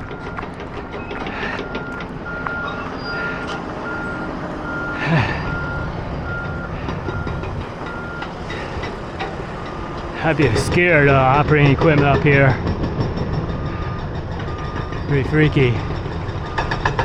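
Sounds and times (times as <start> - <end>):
backup alarm beeping: 0.0 - 9.0
diesel machinery rumble: 0.0 - 17.0.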